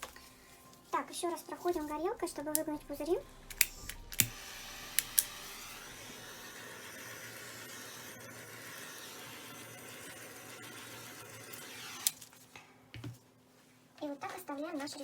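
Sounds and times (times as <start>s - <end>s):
gas torch hissing: 3.4s - 7.5s
sharp clicks: 3.5s - 4.4s.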